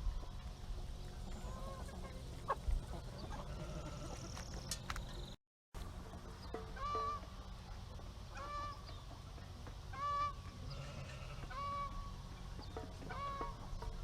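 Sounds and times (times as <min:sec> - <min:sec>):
fowl honking call: 0:06.8 - 0:07.3, 0:08.3 - 0:08.8, 0:09.9 - 0:12.1, 0:13.1 - 0:13.7.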